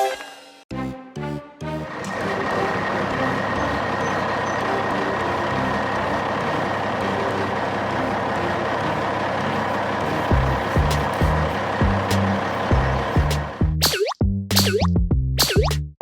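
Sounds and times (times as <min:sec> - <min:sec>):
truck engine running: 0:01.8 - 0:13.8
low thumps: 0:10.3 - 0:15.8.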